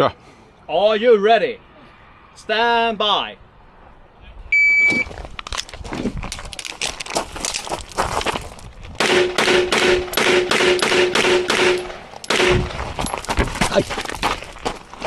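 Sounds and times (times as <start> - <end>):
shot timer beep: 4.6 - 5.1
handgun shots: 9.0 - 12.7.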